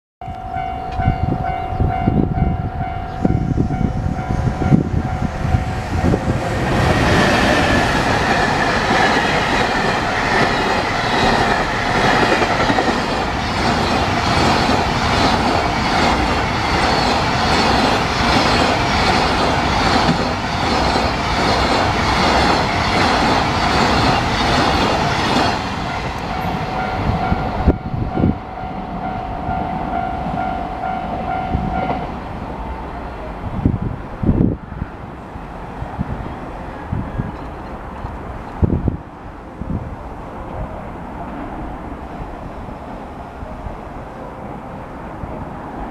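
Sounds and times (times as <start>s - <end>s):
level crossing warning bell: 0.2s - 6.3s, 25.8s - 32.2s
freight train rumbling: 0.2s - 45.9s.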